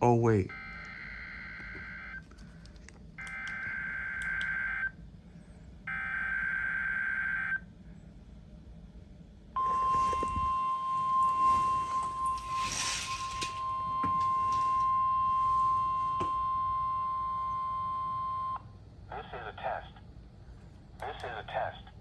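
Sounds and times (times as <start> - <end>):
steady warning alarm tone: 0.1 - 2.2, 3.2 - 5.0, 9.6 - 18.8
radio static hissing: 19.1 - 20.0, 21.0 - 22.0.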